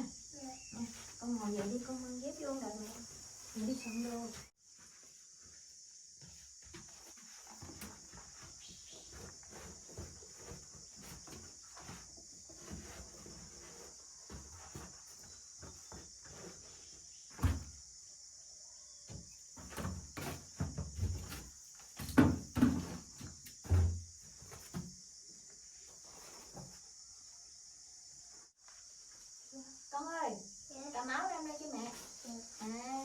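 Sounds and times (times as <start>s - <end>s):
insect chirring: 0.0s - 4.5s.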